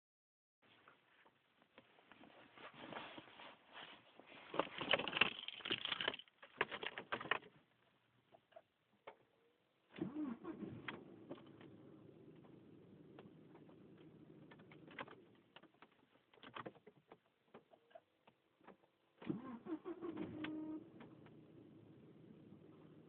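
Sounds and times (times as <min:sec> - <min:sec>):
rustling and clicking: 0:00.8 - 0:07.6
car engine starting: 0:09.9 - 0:15.5, 0:19.2 - 0:23.0.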